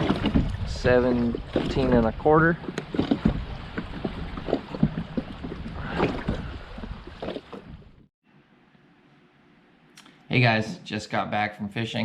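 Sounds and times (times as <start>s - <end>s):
wind noise on microphone: 0.0s - 2.2s.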